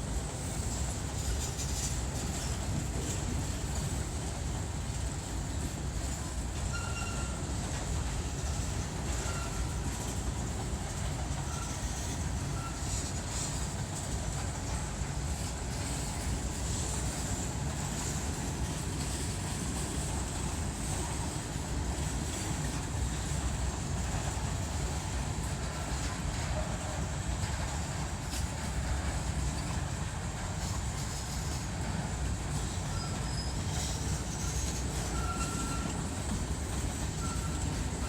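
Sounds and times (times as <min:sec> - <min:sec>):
freight train wheels on rails: 0:00.0 - 0:38.0.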